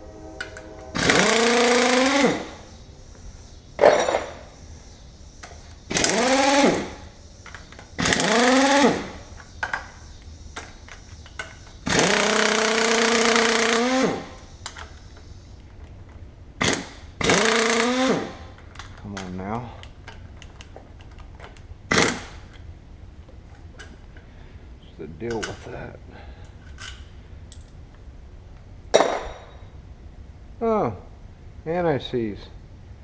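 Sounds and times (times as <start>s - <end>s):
impact wrench spinning and hammering: 1.0s - 2.6s, 3.8s - 4.5s, 5.5s - 14.9s, 16.6s - 18.4s, 21.9s - 22.4s.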